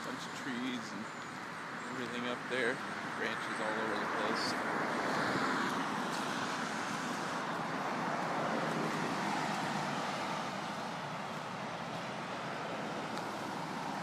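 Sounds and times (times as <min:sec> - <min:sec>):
road traffic passing: 0:00.0 - 0:14.0.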